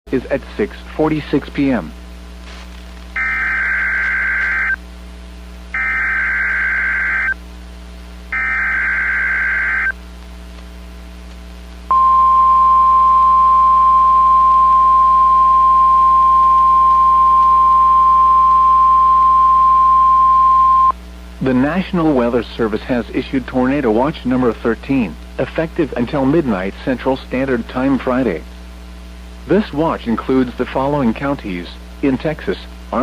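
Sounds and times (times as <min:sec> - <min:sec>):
digital data bursts: 0:03.2 - 0:04.8, 0:05.8 - 0:07.4, 0:08.3 - 0:10.0
steady warning alarm tone: 0:03.2 - 0:04.8, 0:05.7 - 0:07.4, 0:08.3 - 0:10.0, 0:11.9 - 0:20.9.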